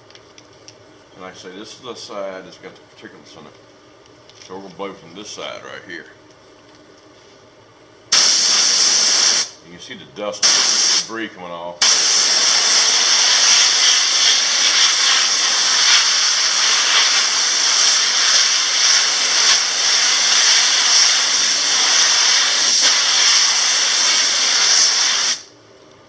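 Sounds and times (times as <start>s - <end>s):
air blow gun hissing: 8.1s - 9.6s, 10.4s - 11.2s, 11.8s - 25.5s.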